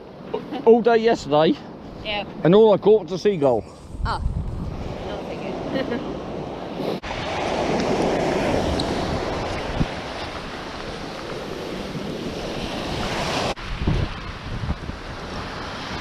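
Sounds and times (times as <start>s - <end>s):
wind buffeting microphone: 1.8s - 16.0s
sea waves washing onto beach: 4.7s - 16.0s.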